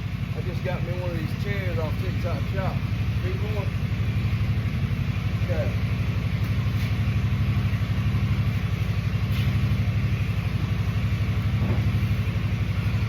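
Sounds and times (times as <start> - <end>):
lawnmower engine idling: 0.0 - 13.0.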